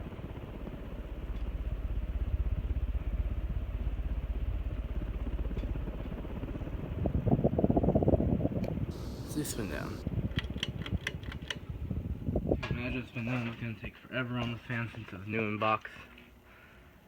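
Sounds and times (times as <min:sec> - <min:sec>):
ceiling fan running: 0:01.1 - 0:12.9.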